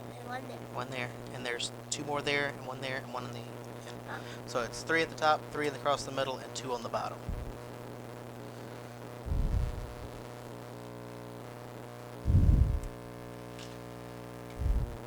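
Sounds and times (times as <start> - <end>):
low electrical hum: 0.0 - 15.0
dull low thumps: 7.2 - 7.6, 9.2 - 10.2, 12.2 - 12.9, 14.6 - 15.0.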